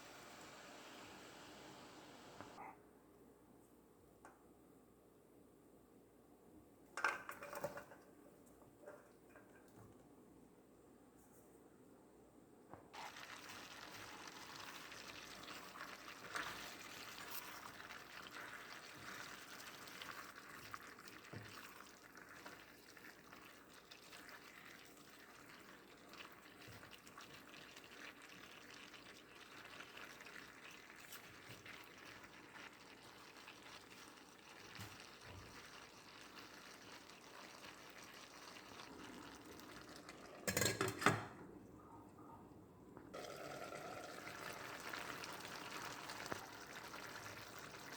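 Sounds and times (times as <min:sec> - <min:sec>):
running water in a kitchen: 0:00.0 - 0:02.6, 0:12.9 - 0:41.4, 0:43.1 - 0:47.9.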